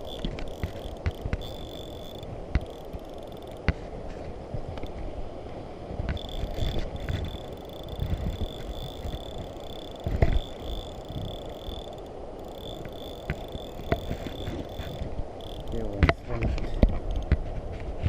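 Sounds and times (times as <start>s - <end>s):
sharp clicks: 0.0s - 3.7s, 6.1s - 16.2s
faint high-pitched whine: 0.0s - 17.0s.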